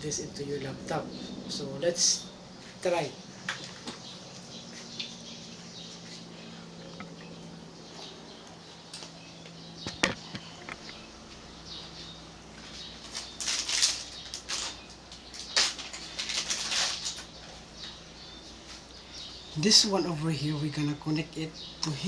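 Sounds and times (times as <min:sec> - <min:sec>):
cable rustling: 0:12.6 - 0:18.0.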